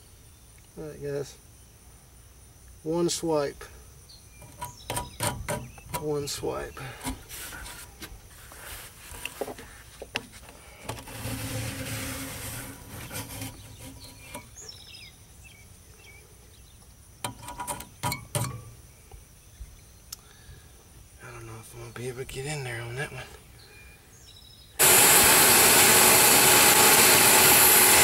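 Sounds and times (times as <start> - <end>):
bird chirping: 4.0 - 7.2, 12.6 - 17.2, 17.9 - 24.8
tools clicking and knocking on metal: 4.4 - 6.1, 17.2 - 18.7
fin comb rasping through coil fins: 10.9 - 14.5.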